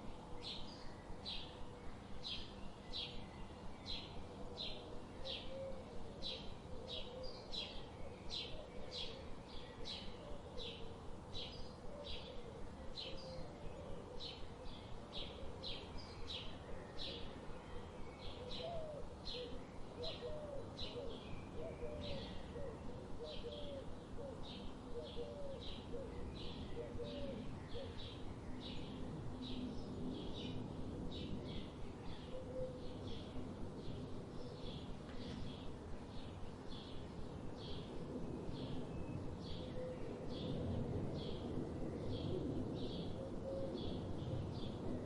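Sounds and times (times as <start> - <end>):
songbird chirping: 0.0 - 45.0
low wavering cooing: 4.4 - 7.4, 18.4 - 28.0, 32.3 - 33.1, 39.6 - 40.4, 43.1 - 43.9.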